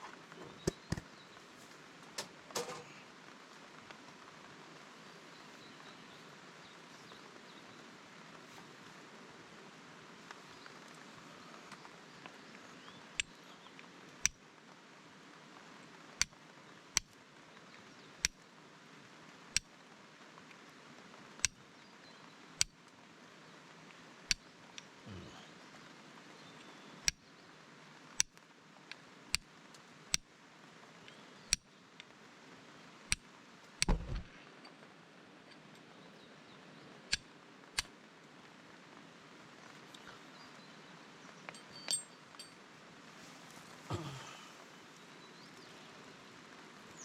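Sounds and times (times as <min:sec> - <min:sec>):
dull thumps: 0:33.8 - 0:34.3.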